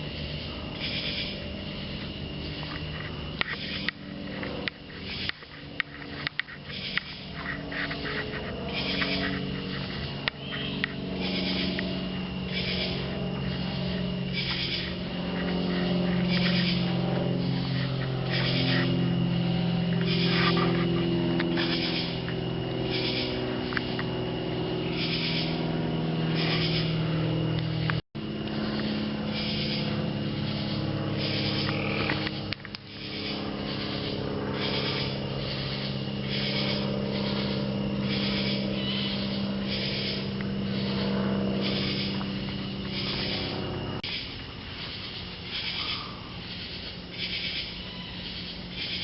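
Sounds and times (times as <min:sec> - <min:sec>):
low mechanical hum: 0:00.0 - 0:49.0.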